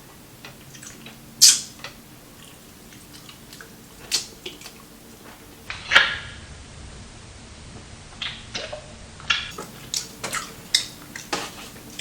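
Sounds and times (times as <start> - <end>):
chewing clicks: 0.7 - 4.9, 9.3 - 12.0.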